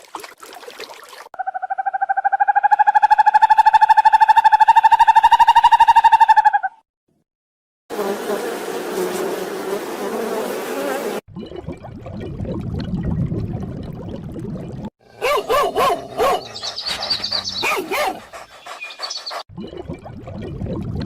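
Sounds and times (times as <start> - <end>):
animal buzz: 7.9 - 11.2.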